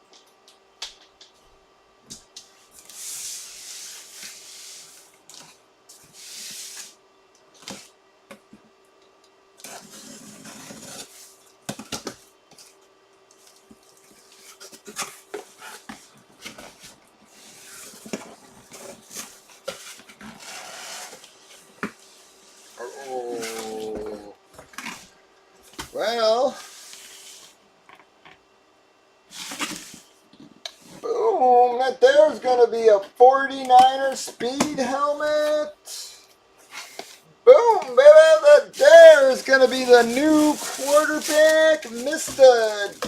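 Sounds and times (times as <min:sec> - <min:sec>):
faint steady hum: 0:00.0 - 0:43.0
packaging rustling and scraping: 0:09.6 - 0:12.8, 0:13.4 - 0:22.8, 0:29.3 - 0:30.2, 0:38.7 - 0:43.0.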